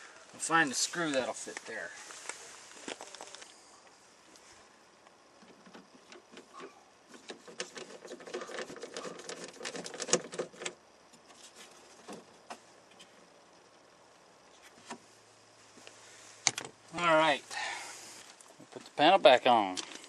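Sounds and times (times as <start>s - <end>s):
small hard parts clicking: 5.4s - 10.8s.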